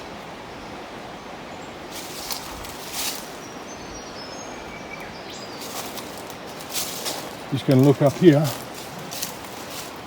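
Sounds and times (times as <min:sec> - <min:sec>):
steady background hiss: 0:00.0 - 0:10.0
short rustles: 0:01.9 - 0:03.4, 0:05.6 - 0:10.0.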